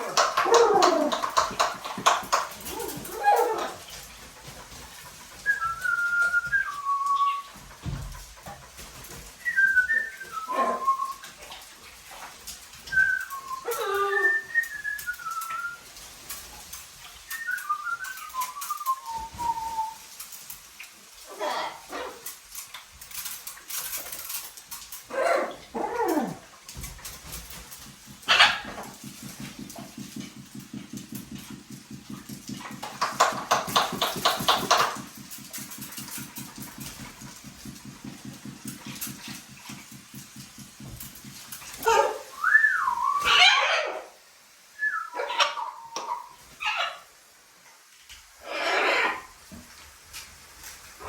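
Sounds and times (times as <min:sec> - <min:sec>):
parrots squawking: 0:00.0 - 0:03.9, 0:21.3 - 0:22.2, 0:28.3 - 0:28.8, 0:41.8 - 0:44.2, 0:44.9 - 0:47.0, 0:48.4 - 0:49.3
wavering whistle: 0:05.4 - 0:07.5, 0:09.4 - 0:11.2, 0:13.0 - 0:15.8, 0:17.3 - 0:20.0, 0:42.3 - 0:43.4, 0:44.8 - 0:45.2.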